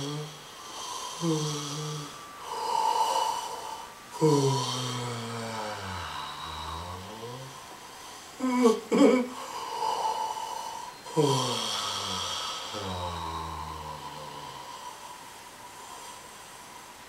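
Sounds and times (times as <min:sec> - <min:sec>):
person yawning: 0:00.0 - 0:07.7, 0:08.4 - 0:15.2
gasping intake of breath: 0:00.0 - 0:17.0.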